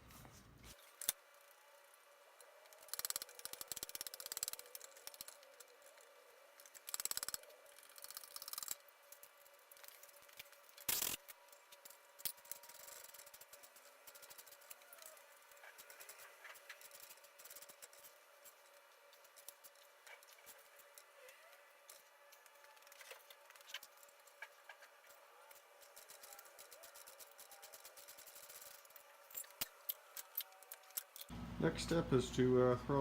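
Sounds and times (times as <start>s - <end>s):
ratchet clicking: 2.6s - 6.0s, 6.6s - 18.6s.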